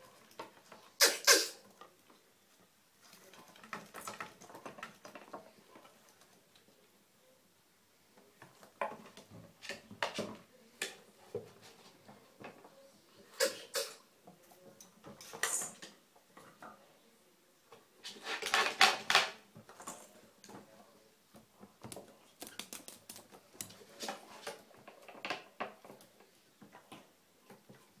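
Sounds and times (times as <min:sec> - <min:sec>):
light knocks and clatters: 0:03.0 - 0:06.4
claws scratching on a bathtub: 0:21.9 - 0:24.6.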